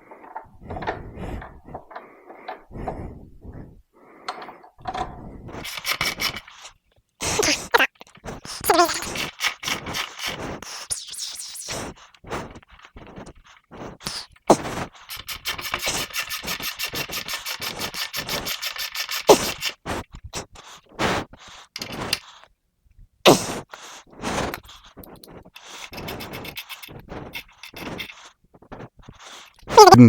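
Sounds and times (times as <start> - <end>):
socket ratchet clicking rapidly: 15.1 - 19.8, 25.2 - 28.1.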